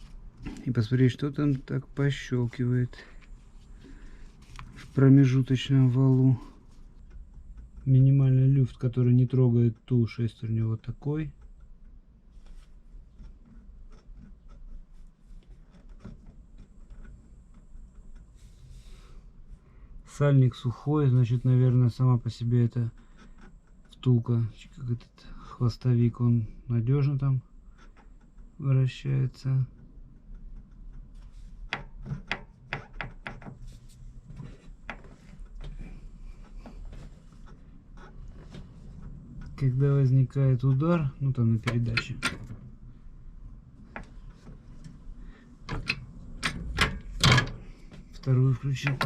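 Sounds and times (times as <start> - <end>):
metallic clicks and knocks: 41.4 - 42.7, 45.6 - 47.8.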